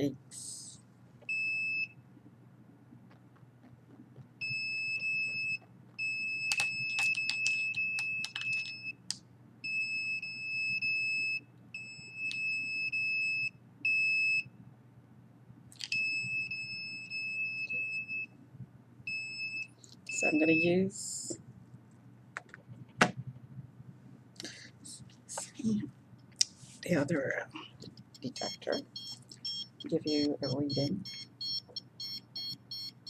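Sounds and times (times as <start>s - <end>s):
high steady alarm beep: 19.1s - 20.8s, 28.2s - 33.0s.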